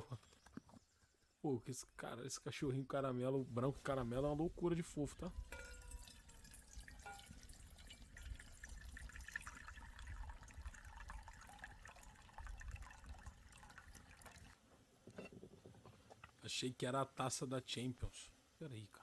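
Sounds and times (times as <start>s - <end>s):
water trickling and dripping: 5.2s - 14.6s.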